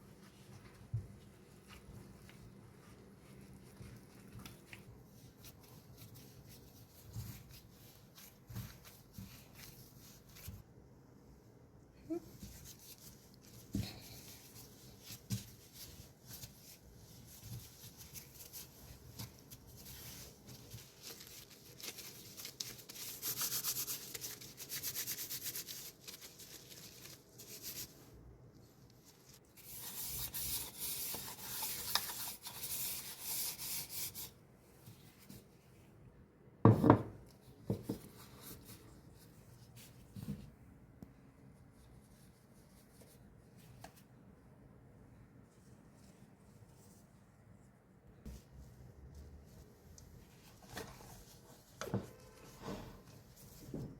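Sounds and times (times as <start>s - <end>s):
rubbing and scraping of food: 12.4s - 35.5s, 48.2s - 53.9s.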